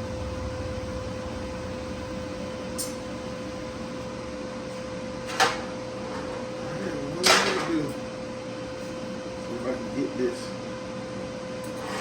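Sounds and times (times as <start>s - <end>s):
welding machine hum: 0.0s - 7.2s.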